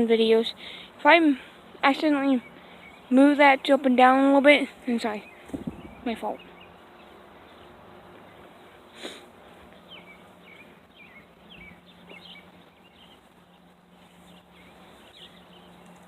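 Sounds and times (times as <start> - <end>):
bird chirping: 2.0 - 3.5, 5.0 - 16.0.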